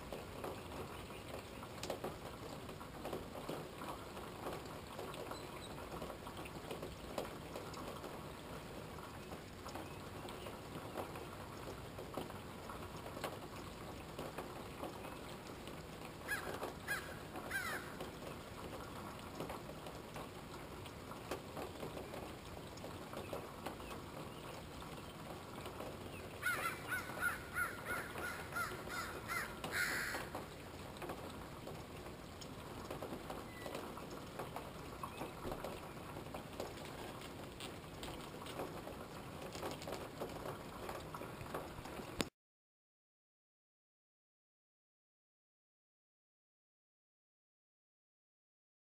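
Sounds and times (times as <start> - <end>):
rain pattering: 0.0 - 42.3
bird calling harshly: 16.3 - 18.0, 26.4 - 30.3.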